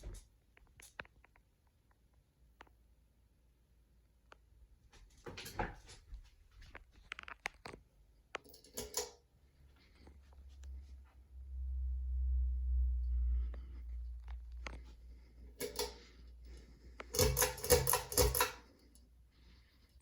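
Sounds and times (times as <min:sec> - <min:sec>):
ceiling fan rumbling: 0:09.4 - 0:19.8.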